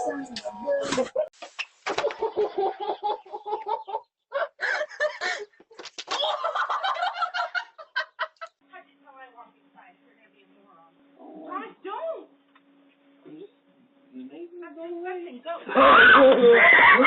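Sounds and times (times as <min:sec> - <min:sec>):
chicken clucking and squawking: 0:02.0 - 0:04.1.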